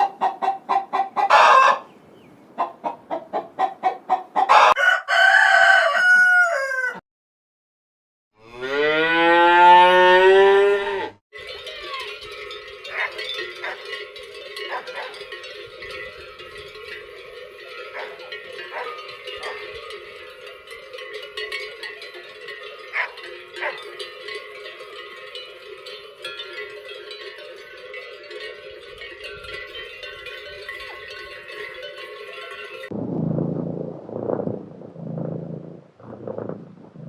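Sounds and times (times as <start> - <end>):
cowbells clanking: 11.4 - 33.0.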